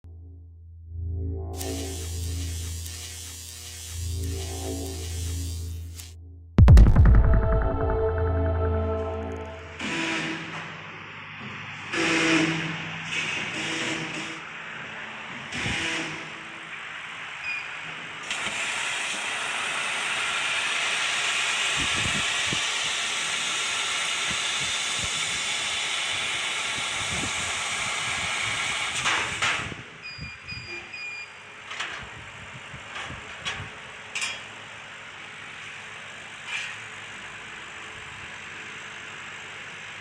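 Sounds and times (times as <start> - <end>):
machine noise: 1.5 - 10.9
gas hissing through laser cutter: 1.6 - 6.1
short high tones: 6.6 - 10.0.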